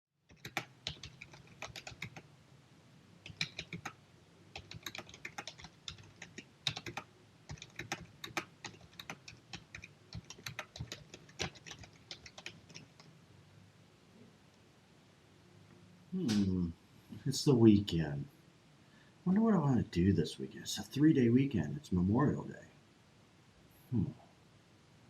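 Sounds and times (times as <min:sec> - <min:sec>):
faint low hum: 0:00.2 - 0:25.0
computer keyboard typing: 0:00.3 - 0:02.2, 0:03.2 - 0:13.1.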